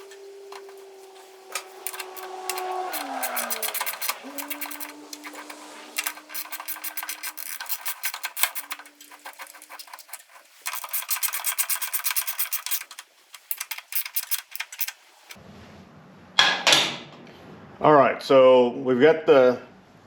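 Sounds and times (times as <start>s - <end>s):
ratchet wrench clicking: 1.5s - 15.4s.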